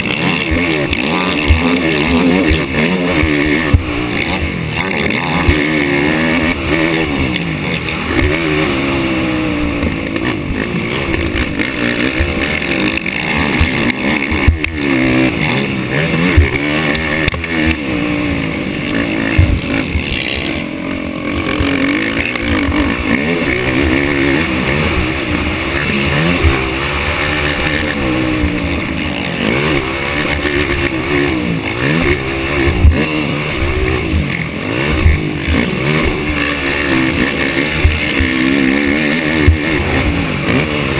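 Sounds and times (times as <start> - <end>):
atv engine revving: 0.0 - 40.9
low thumps: 19.3 - 20.1.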